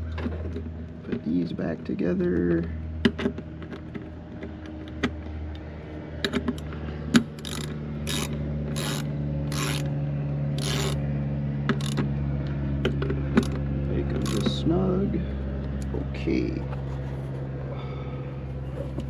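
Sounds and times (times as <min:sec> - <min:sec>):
ratchet wrench clicking: 0:07.4 - 0:09.9, 0:10.6 - 0:11.0, 0:11.7 - 0:12.0, 0:14.2 - 0:14.6.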